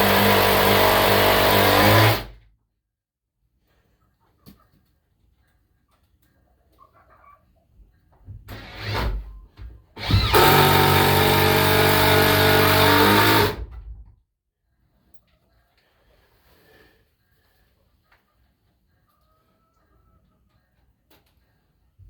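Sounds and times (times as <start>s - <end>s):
cordless drill driving screw into wood: 0.0s - 2.4s, 8.5s - 9.3s, 10.0s - 13.7s.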